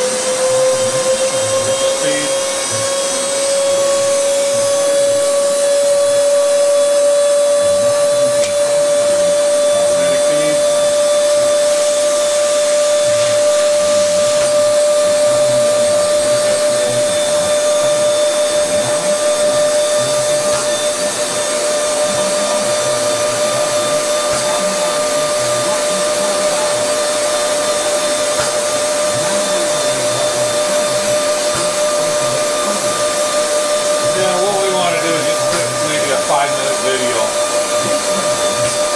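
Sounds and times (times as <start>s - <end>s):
constant machine whine: 0.0s - 38.9s
machine rushing hum: 0.0s - 38.9s.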